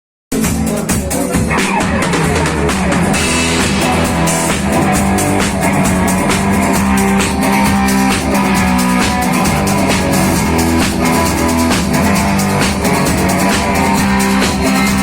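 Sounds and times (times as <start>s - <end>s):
drum kit beat: 0.3s - 15.0s
rock band playing live: 0.3s - 15.0s.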